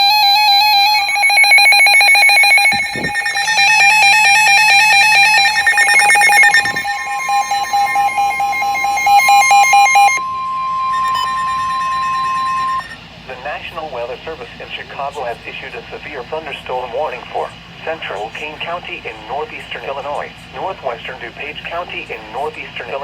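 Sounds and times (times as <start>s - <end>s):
rapidly pulsing electronic beeps: 0.0s - 13.0s
steady warning alarm tone: 0.0s - 13.0s.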